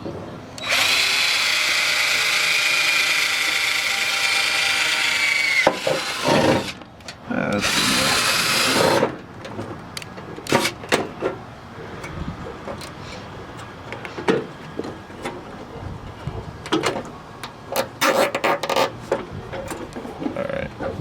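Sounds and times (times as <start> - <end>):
tools and car parts clattering: 8.8 - 15.8, 16.6 - 21.0.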